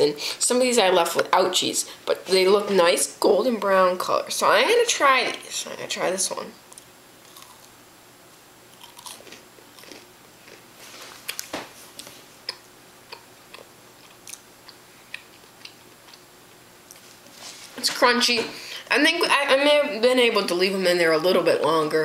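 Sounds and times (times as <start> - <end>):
crunching crisp chip: 7.2 - 7.7, 8.7 - 10.6.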